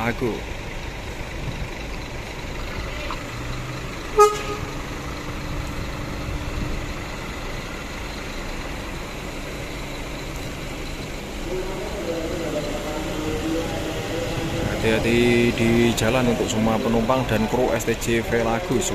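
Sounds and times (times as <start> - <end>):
diesel engine rumble: 0.0 - 18.9
bus horn toot: 4.1 - 5.0.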